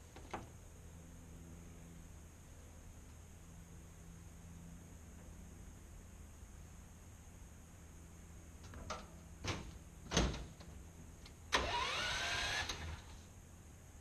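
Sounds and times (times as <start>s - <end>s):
small motor whining: 11.6s - 13.1s.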